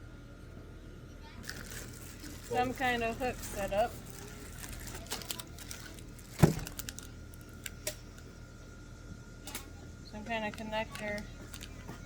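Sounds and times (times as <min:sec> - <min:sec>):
small items clicking and rattling: 0:01.4 - 0:08.0, 0:10.5 - 0:12.0.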